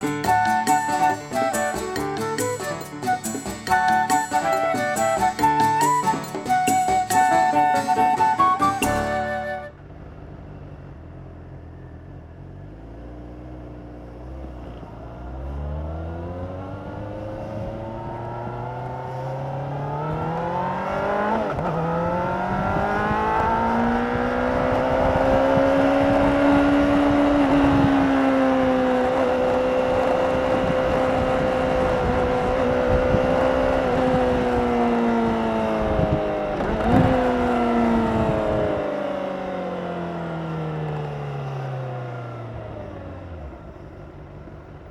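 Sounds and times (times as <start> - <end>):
motorcycle engine revving: 9.3 - 44.9.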